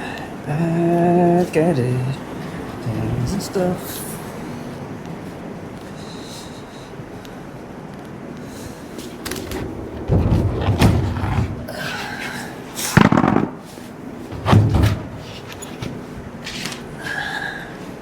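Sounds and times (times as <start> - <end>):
heavy bangs and thuds: 9.4 - 11.8, 13.0 - 16.0.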